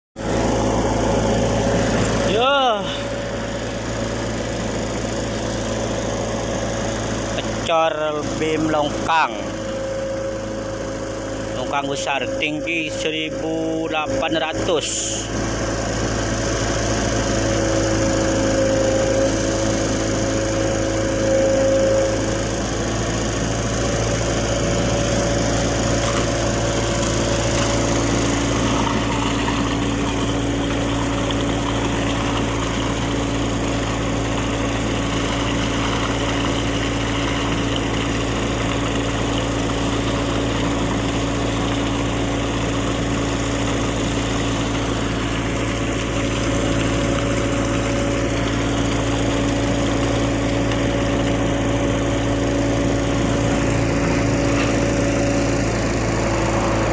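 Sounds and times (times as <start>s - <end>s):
engine running steadily: 0.2s - 56.9s.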